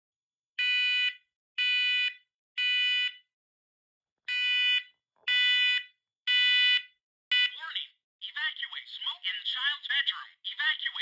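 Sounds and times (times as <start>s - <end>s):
smoke alarm beeping: 4.3s - 7.6s.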